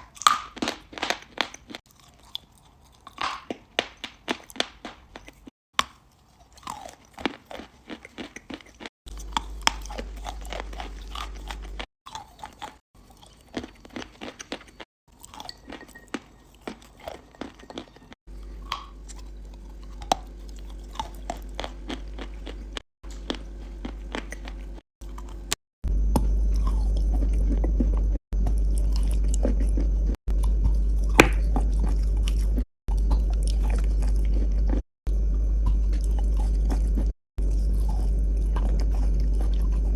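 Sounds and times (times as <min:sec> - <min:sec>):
crunchy chewing: 0:00.0 - 0:39.9
low hum: 0:18.3 - 0:39.9.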